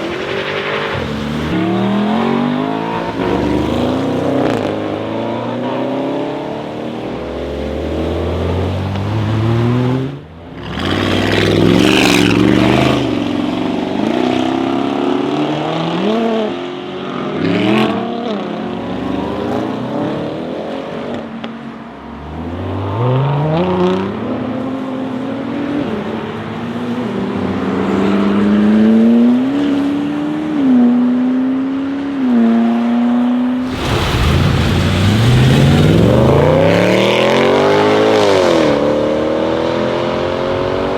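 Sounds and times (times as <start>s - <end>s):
exhaust crackles: 33.6s - 37.7s
car engine revving: 33.6s - 40.7s.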